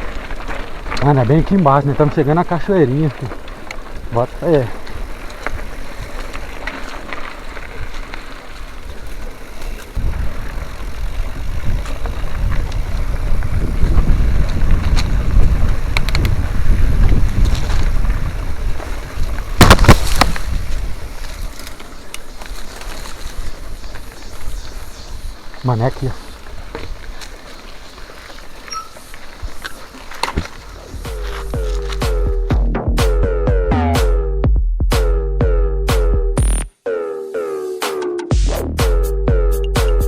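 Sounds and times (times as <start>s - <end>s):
wind buffeting microphone: 0.0s - 31.8s
bike rattling: 0.0s - 32.7s.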